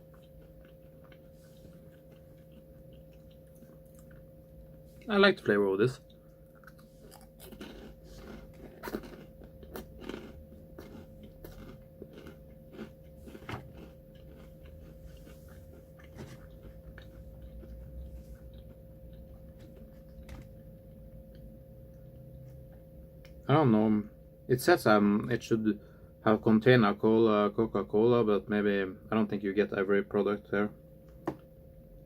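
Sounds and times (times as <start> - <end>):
crisp crunching and chewing: 0.0 - 5.1, 5.9 - 23.4
faint steady hum: 0.0 - 32.0.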